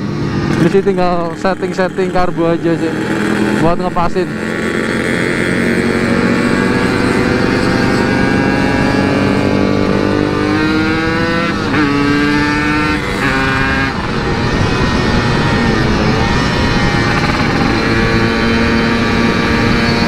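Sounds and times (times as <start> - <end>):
motorcycle engine accelerating: 0.0 - 20.0
rider talking: 0.5 - 7.8.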